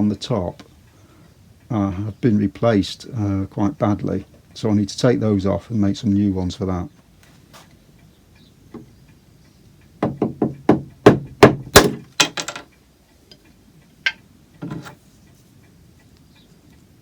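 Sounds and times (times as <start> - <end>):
tool knocking on brickwork: 10.0 - 12.6.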